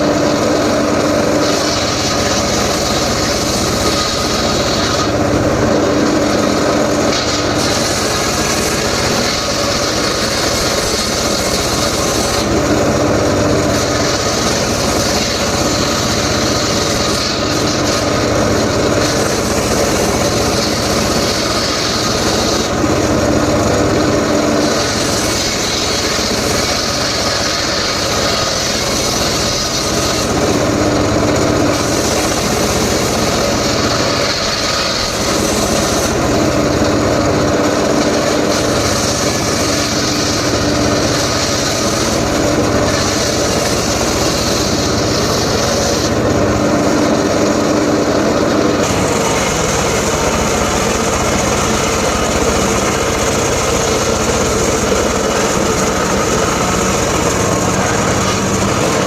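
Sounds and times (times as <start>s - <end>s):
power saw cutting wood: 0.0s - 59.0s.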